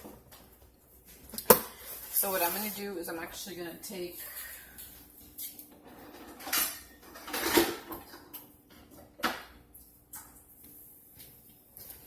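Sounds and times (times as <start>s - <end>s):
dishes and utensils clattering: 5.7s - 9.5s.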